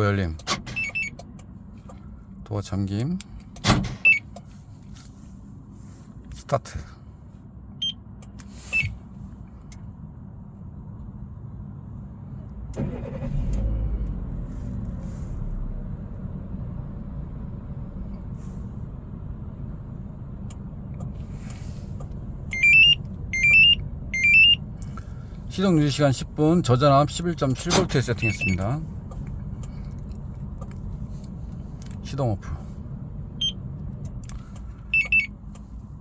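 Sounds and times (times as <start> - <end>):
car engine cranking and idling: 0.0 - 36.0
short electronic beeps: 22.5 - 24.6, 28.2 - 28.6, 35.0 - 35.3.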